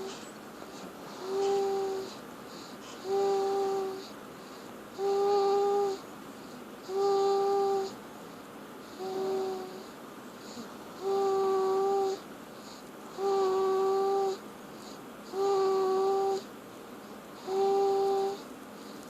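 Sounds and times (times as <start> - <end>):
baby snoring: 1.1 - 6.0, 6.9 - 8.0, 8.9 - 12.2, 13.1 - 16.5, 17.4 - 18.4.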